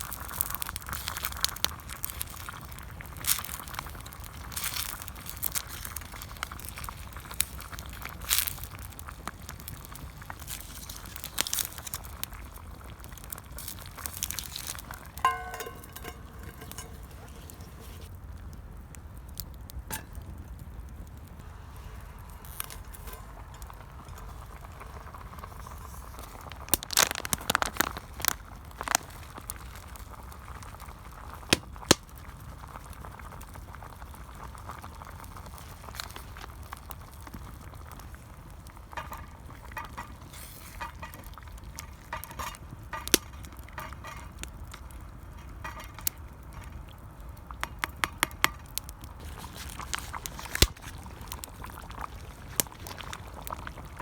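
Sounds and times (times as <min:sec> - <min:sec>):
campfire crackling and popping: 0:00.0 - 0:54.0
low steady rumble: 0:14.2 - 0:26.8.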